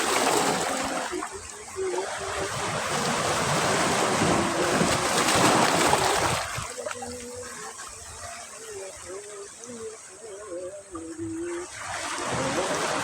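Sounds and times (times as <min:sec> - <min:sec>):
wave breaking on beach: 0:00.0 - 0:07.3, 0:11.6 - 0:13.0.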